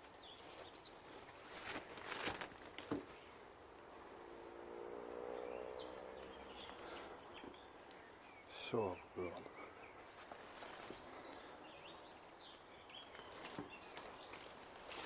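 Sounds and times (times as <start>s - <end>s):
footsteps through undergrowth: 0.0s - 4.1s, 10.0s - 11.4s, 13.1s - 15.0s
small birds chirping: 0.0s - 15.0s.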